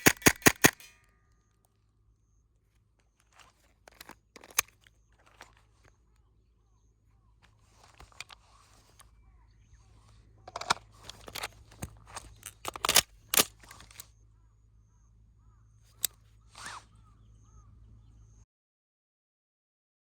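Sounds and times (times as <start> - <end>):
metallic gun clicks: 0.0 - 1.0, 12.2 - 14.0
faint bird chirps: 1.1 - 3.8, 4.8 - 10.4, 13.6 - 18.5.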